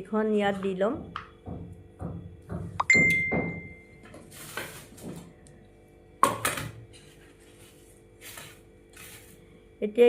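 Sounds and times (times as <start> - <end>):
loud knock: 1.0 - 3.8
utensil clink with ringing tone: 2.8 - 4.0.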